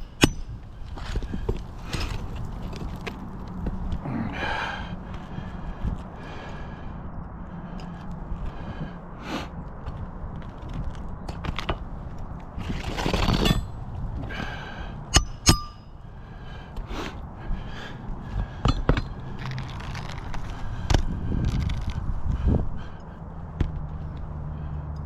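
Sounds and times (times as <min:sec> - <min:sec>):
shingles cracking and clicking: 0:18.7 - 0:22.0
roof shingles scraping: 0:19.4 - 0:20.7.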